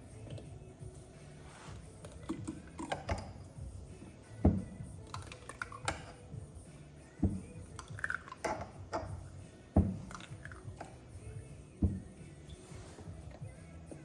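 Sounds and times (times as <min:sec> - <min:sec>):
fork pumping thump: 0:04.4 - 0:04.8, 0:07.2 - 0:07.6, 0:09.7 - 0:10.2, 0:11.8 - 0:13.0.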